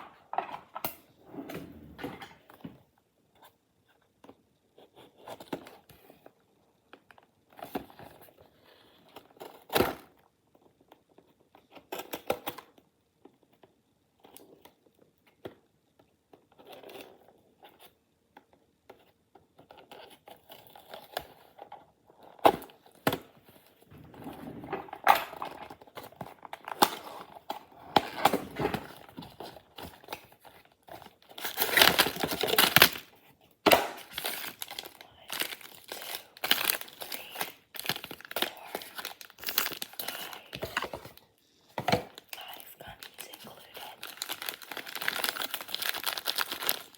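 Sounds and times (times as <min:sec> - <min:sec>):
packaging rustling and tearing: 0:23.9 - 0:46.9.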